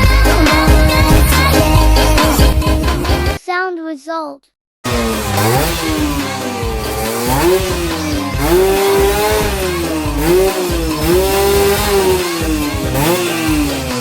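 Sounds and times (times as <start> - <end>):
two-stroke engine revving: 4.8 - 14.0.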